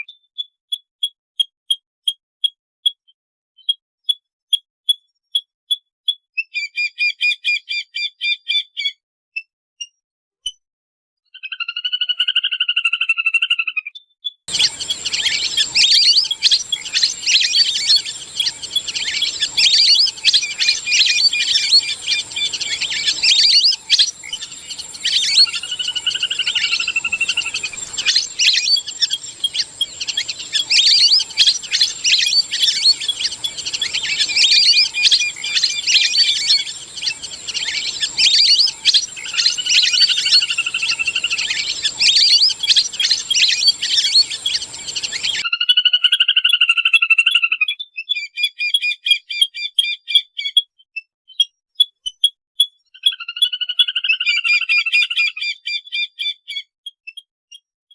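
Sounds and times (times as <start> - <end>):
ducks whistled chirps: 14.5 - 45.5.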